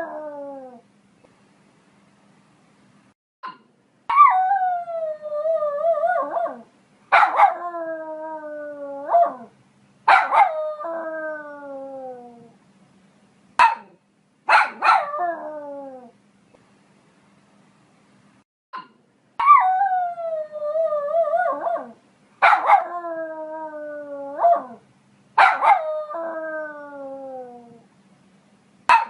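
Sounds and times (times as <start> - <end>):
dog yipping: 10.1 - 10.6, 13.6 - 13.9, 14.5 - 15.1.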